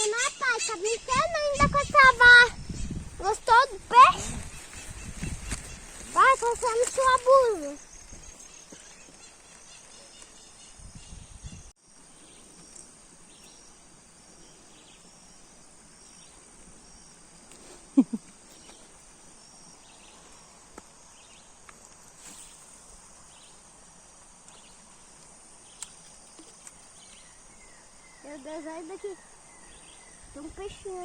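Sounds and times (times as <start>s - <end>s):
steady hiss: 0.2s - 31.0s.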